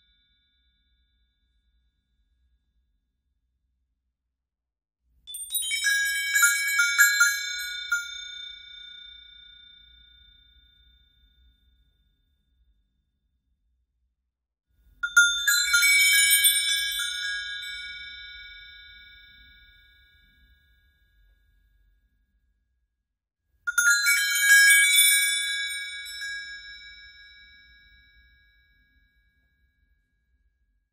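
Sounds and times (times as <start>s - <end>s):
small bells jangling: 5.3s - 9.6s, 15.0s - 19.3s, 23.7s - 27.8s.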